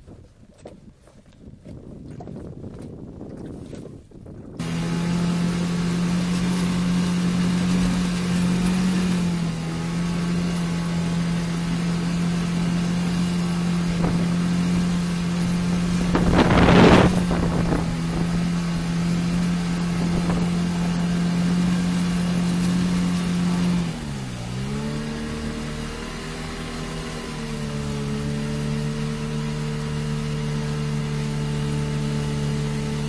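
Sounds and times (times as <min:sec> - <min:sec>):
outboard motor running: 0:00.0 - 0:33.0
loud rushing noise: 0:13.6 - 0:22.4.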